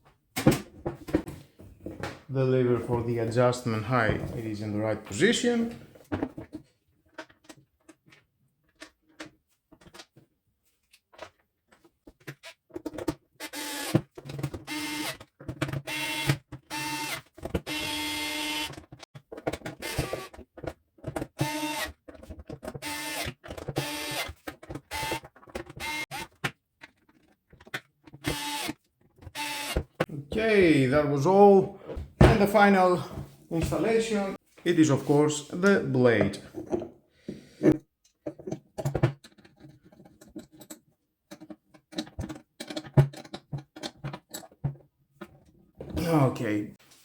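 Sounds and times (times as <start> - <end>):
cordless driver whirring: 28.2 - 28.7.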